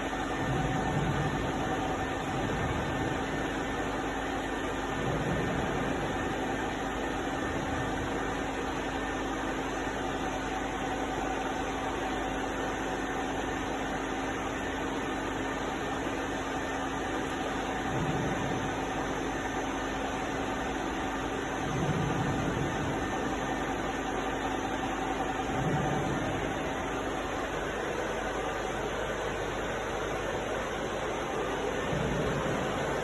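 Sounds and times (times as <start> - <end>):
milling machine running: 0.0 - 33.0.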